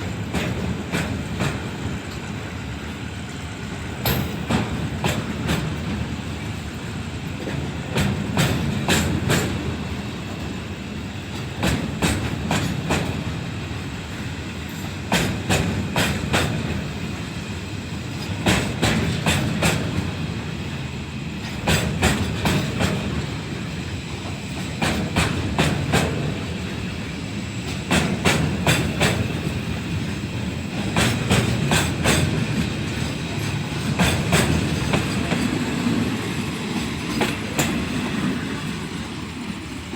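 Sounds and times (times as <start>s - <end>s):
train rumble: 0.0s - 39.9s
train wheel clicks over rail joint: 4.0s - 6.0s, 7.3s - 9.8s, 11.3s - 13.4s, 14.1s - 17.0s, 18.1s - 20.1s, 21.4s - 23.4s, 24.1s - 26.9s, 27.6s - 29.9s, 30.7s - 35.6s, 36.8s - 37.9s.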